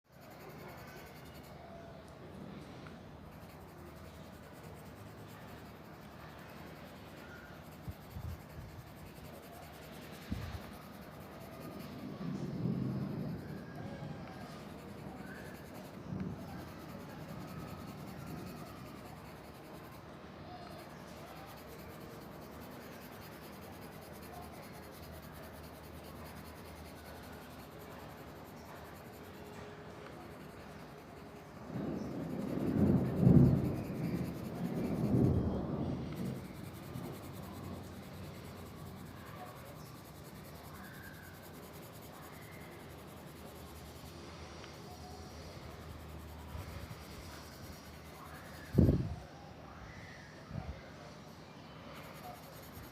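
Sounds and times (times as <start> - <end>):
pencil scratching on paper: 0.1 - 1.7, 3.2 - 12.2, 12.9 - 35.4, 36.2 - 44.8, 52.0 - 52.9
faint hiss: 0.1 - 52.9.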